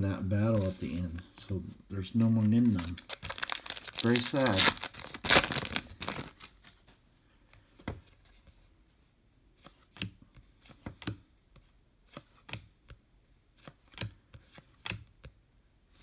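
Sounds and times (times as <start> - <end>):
cards tapping and sliding: 2.2 - 6.5.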